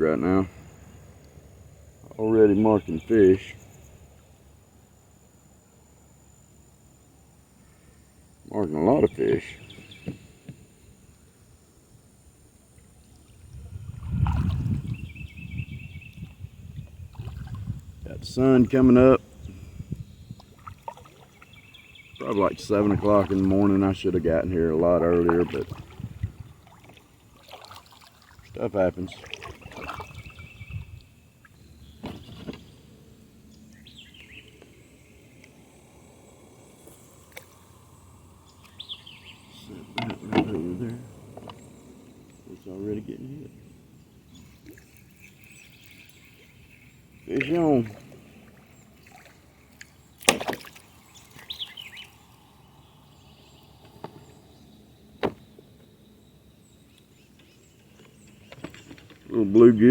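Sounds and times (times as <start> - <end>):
bird chirping: 19.3 - 25.6, 28.7 - 35.4, 36.3 - 59.7
low steady rumble: 32.6 - 44.6.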